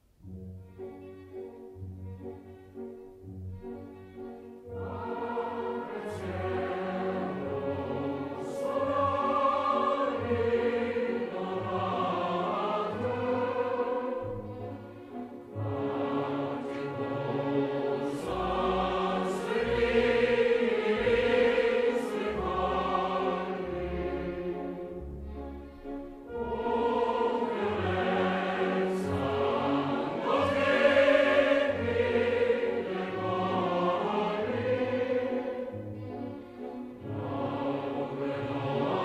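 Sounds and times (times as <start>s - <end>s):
choir singing held chords: 4.6s - 25.3s, 26.2s - 39.0s.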